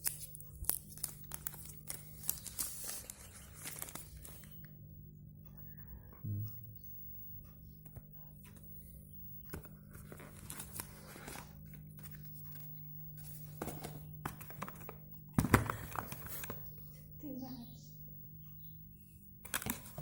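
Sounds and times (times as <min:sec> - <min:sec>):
packaging crinkling and tearing: 0:00.0 - 0:04.6
low hum: 0:03.2 - 0:19.4.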